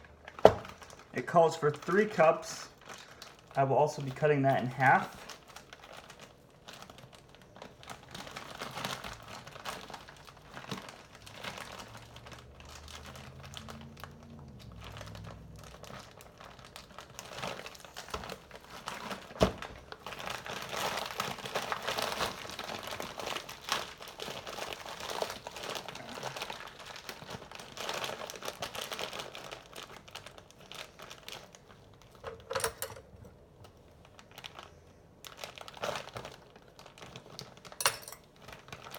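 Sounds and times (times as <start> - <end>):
plastic bag rustling: 0.0 - 38.9.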